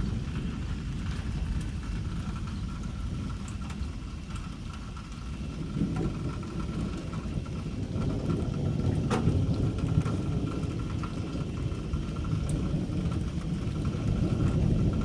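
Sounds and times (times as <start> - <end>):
thunder rumbling: 0.0 - 15.0
thunder crack: 5.8 - 15.0.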